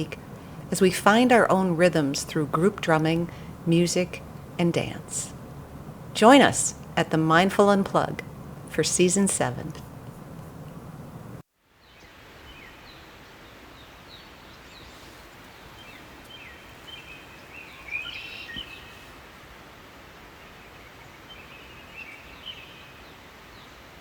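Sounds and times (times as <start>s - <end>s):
steady outdoor hiss: 0.0s - 24.0s
small birds chirping: 13.8s - 19.1s.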